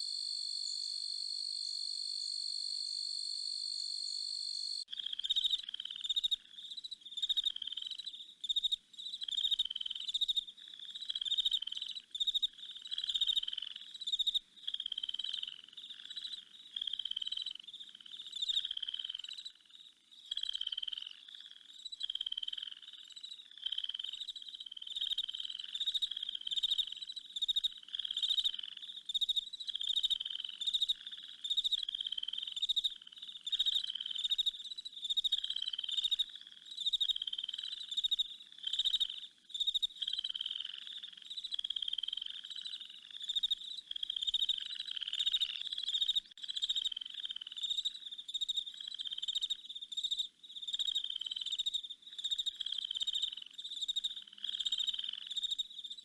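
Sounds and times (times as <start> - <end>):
frogs calling in chorus: 14.6 - 27.0, 35.2 - 49.5, 50.7 - 55.6.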